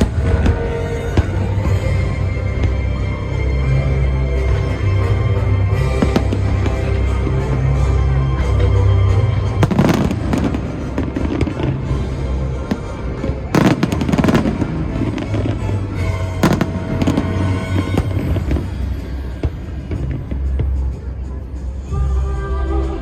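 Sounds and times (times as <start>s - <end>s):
fireworks cracking and banging: 0.0s - 1.8s, 5.9s - 7.4s, 9.5s - 21.2s
loud music with deep bass: 0.0s - 23.0s.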